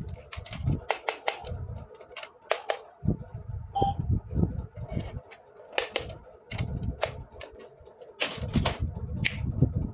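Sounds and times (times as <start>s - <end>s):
plastic toy parts clicking: 0.1s - 2.8s, 5.7s - 7.6s.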